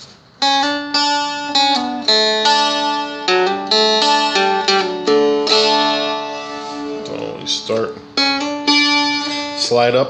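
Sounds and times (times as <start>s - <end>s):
picked dulcimer melody: 0.4s - 9.8s.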